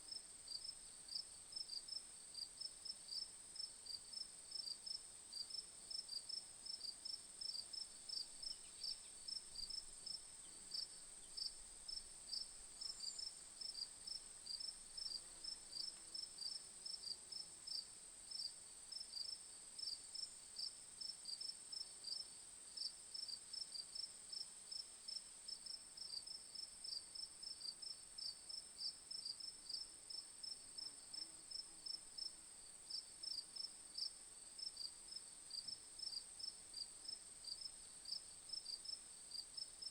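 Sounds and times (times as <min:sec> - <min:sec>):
crickets chirping: 0:06.2 - 0:18.5.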